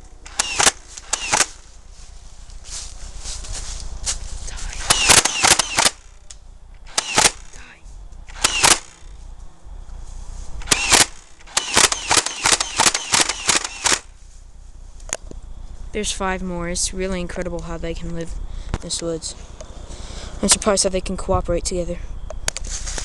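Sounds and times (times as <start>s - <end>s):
toy blaster firing: 0.2s - 1.6s, 4.8s - 6.2s, 6.9s - 7.6s, 8.3s - 9.1s, 10.6s - 14.1s.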